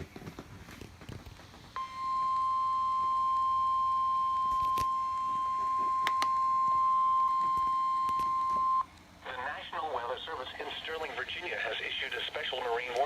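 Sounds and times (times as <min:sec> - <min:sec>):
steady alarm tone: 0:01.8 - 0:08.9.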